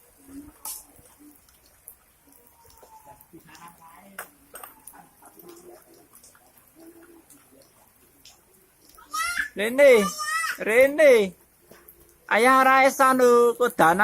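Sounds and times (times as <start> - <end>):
faint voices: 0.0 - 10.8
light rain falling: 0.0 - 14.0
drips and taps: 0.2 - 14.0.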